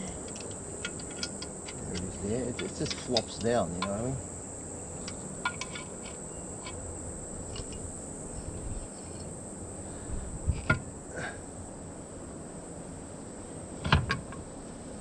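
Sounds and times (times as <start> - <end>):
clicks of parts being handled: 0.0 - 4.1, 4.9 - 6.8, 7.4 - 8.0
insects chirring: 0.0 - 15.0.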